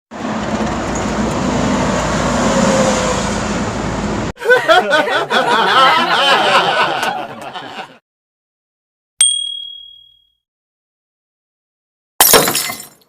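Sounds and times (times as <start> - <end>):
crowd laughing: 4.4 - 8.0
high bell ding: 9.2 - 10.4.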